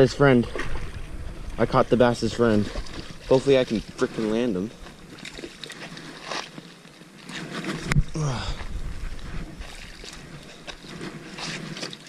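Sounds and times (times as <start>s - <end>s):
person's falling vocal sound: 8.1s - 8.7s.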